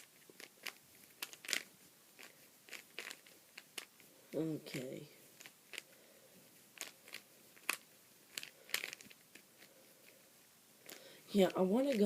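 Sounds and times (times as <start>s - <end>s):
puzzle cube clicking: 0.0s - 4.0s, 5.4s - 5.9s, 6.7s - 9.7s
cloth rustling: 0.0s - 12.0s.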